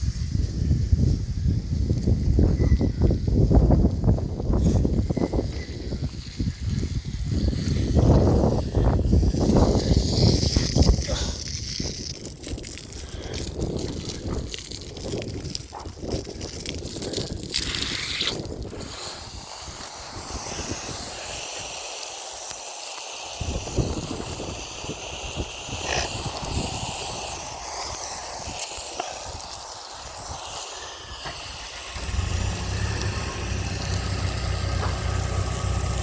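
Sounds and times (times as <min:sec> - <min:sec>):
wind gusts on microphone: 0:00.0 - 0:21.5, 0:23.4 - 0:28.6
steady hiss: 0:17.2 - 0:36.0
engine idling: 0:31.6 - 0:36.0.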